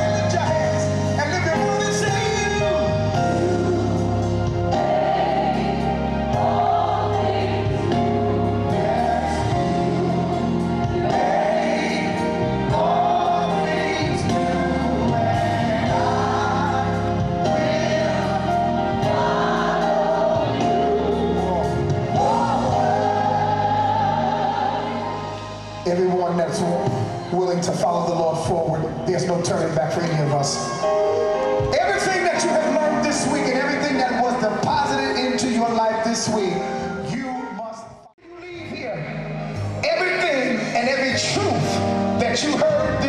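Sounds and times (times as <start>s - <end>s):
gospel choir singing: 0.0s - 37.1s, 39.8s - 43.0s
instrumental accompaniment: 0.0s - 43.0s.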